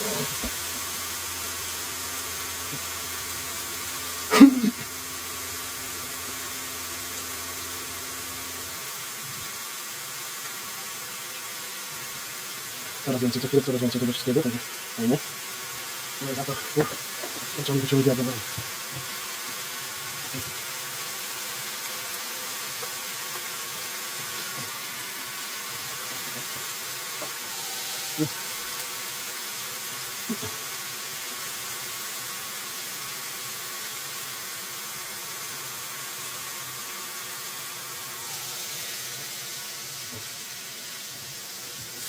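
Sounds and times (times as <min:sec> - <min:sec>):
faint buzzing hum: 0:00.0 - 0:09.6
food sizzling hiss: 0:00.0 - 0:42.0.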